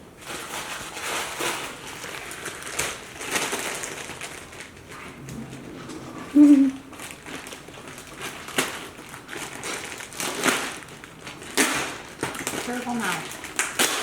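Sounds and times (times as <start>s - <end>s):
toddler vocal sound: 6.3s - 6.9s.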